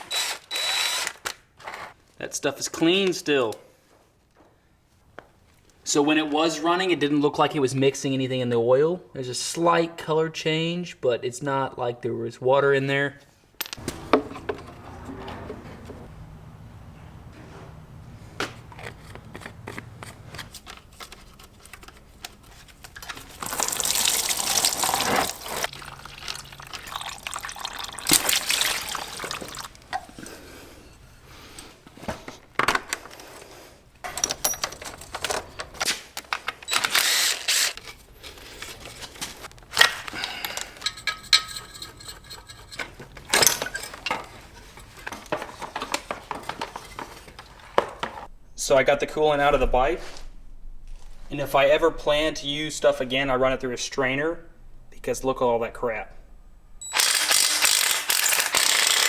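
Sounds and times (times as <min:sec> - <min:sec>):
liquid pouring into a container: 0:23.4 - 0:29.8
tools clicking and knocking: 0:34.0 - 0:38.0, 0:39.8 - 0:48.2.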